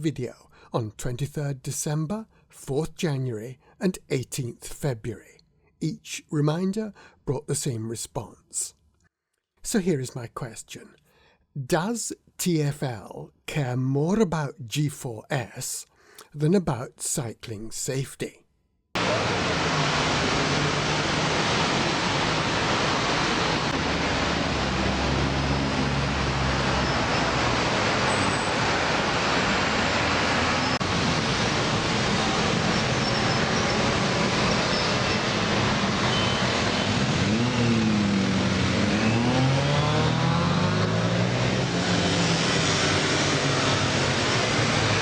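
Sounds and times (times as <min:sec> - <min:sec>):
heavy vehicle engine humming: 0:19.0 - 0:45.0
road traffic noise: 0:19.0 - 0:45.0.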